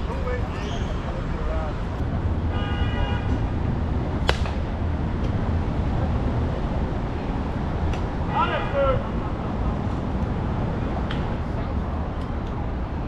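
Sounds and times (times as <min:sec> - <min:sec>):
traffic rumble: 0:00.0 - 0:13.0
wind: 0:00.0 - 0:13.0
softball impact crack: 0:04.2 - 0:04.7.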